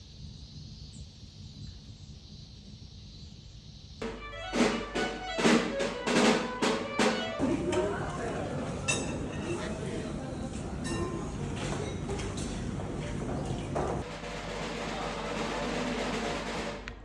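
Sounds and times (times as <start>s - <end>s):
music with accented drum strokes: 4.0s - 8.4s, 14.0s - 17.0s.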